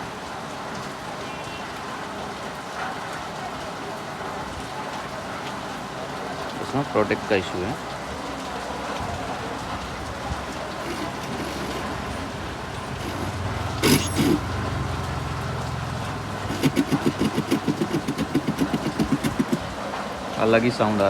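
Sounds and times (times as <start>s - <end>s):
rapid stuttering buzz: 10.5s - 14.6s, 16.4s - 19.7s.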